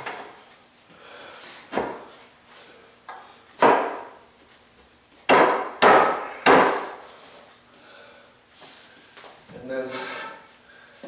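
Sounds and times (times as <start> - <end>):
sharp knocks on wood: 3.6 - 4.2, 5.3 - 7.0.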